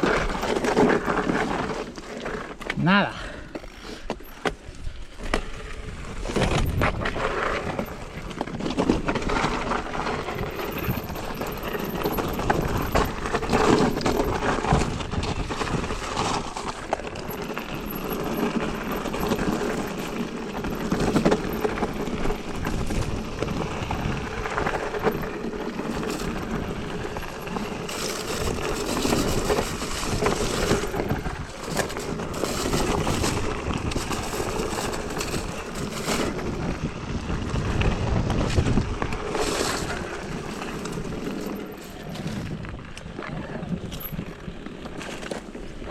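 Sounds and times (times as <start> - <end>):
bike tyres on dirt trail: 0.0 - 45.9
bike clattering over bumps: 4.2 - 43.2
wind on microphone: 28.3 - 41.2.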